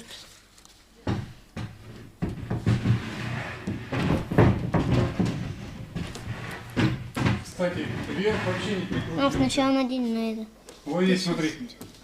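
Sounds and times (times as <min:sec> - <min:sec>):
wooden panels knocking: 0:01.0 - 0:09.7.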